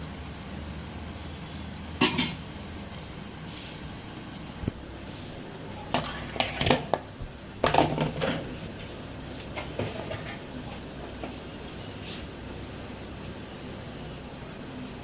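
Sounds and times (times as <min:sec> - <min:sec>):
pots and utensils clattering: 0:02.0 - 0:02.5, 0:05.9 - 0:08.8, 0:09.5 - 0:11.4.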